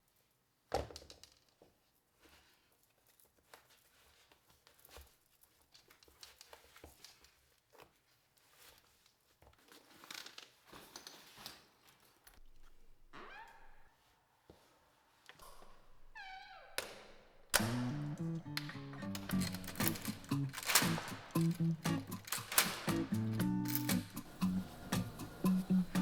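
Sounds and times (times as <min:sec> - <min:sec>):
soft rustling and crinkling: 0:00.0 - 0:16.2
small clicks: 0:16.8 - 0:26.0.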